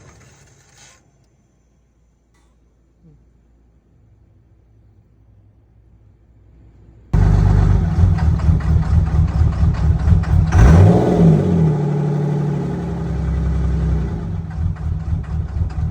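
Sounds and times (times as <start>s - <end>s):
diesel engine idling roughly: 7.2s - 15.9s.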